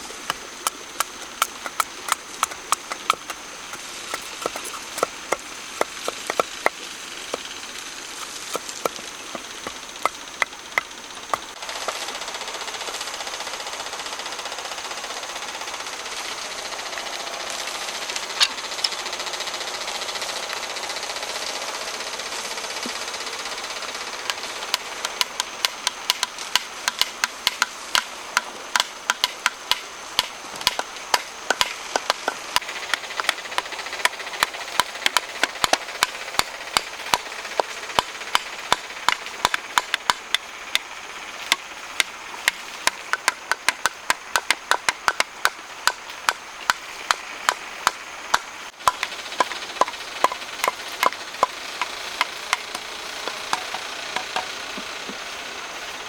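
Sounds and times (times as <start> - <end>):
steady background hiss: 0.0 - 56.0
hand tool knocking on wood: 0.3 - 7.5, 8.2 - 11.5, 28.8 - 33.4, 42.9 - 46.8, 47.8 - 55.2.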